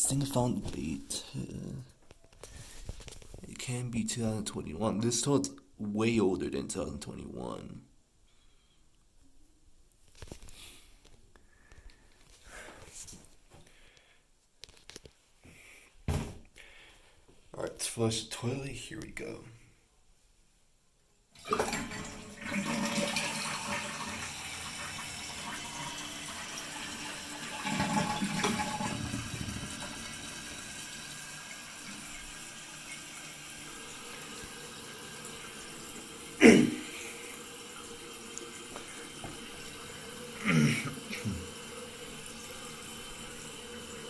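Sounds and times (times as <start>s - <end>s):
toilet flushing: 21.4s - 44.0s
toilet tank refilling hiss: 21.4s - 44.0s.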